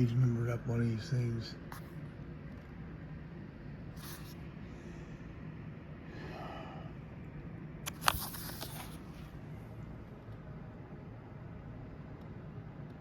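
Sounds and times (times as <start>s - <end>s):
steady low hum: 0.0s - 13.0s
book pages rustling: 7.9s - 9.3s.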